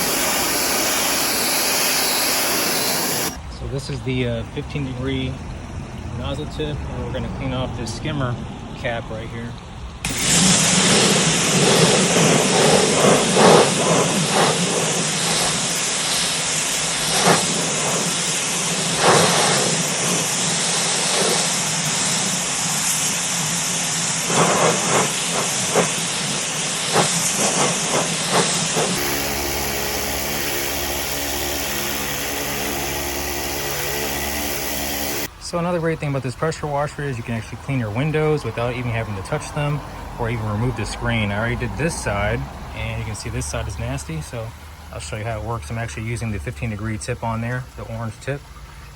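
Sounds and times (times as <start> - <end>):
pressure washer water hiss: 0.0 - 3.4, 10.1 - 46.4
water splattering bursts: 0.0 - 3.4, 24.2 - 48.9
low hum: 24.2 - 36.4.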